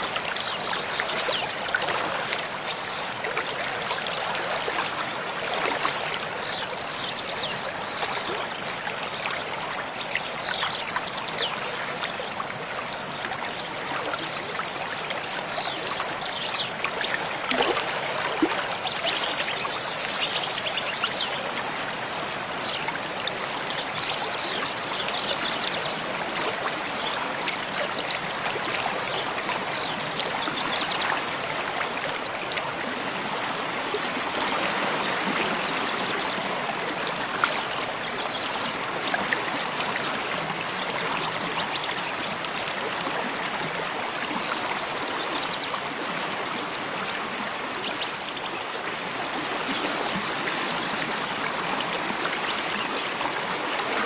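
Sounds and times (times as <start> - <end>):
stream rushing and trickling: 0.0 - 54.0.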